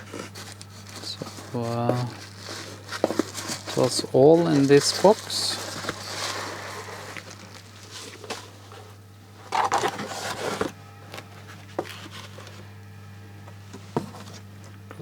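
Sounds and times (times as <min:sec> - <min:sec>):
plastic bags rustling: 0:00.0 - 0:10.8
steady low hum: 0:00.0 - 0:15.0.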